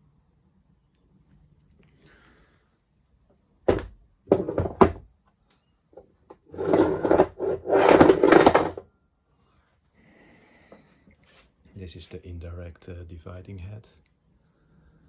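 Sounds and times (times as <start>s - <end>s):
scraping and shuffling: 6.3s - 8.8s.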